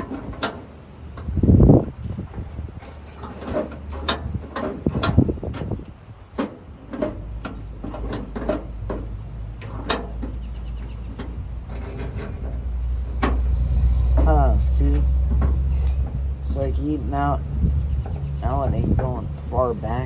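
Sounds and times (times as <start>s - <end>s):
latch parts clicking: 0.0s - 14.3s
low steady hum: 0.0s - 20.0s.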